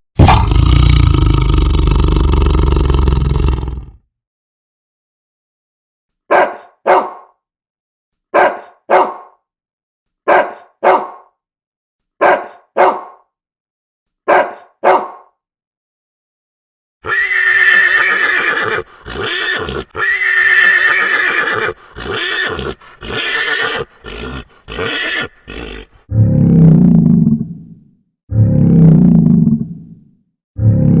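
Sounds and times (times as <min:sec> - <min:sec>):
zebra braying: 0:17.0 - 0:26.0
zebra calls: 0:17.0 - 0:26.0.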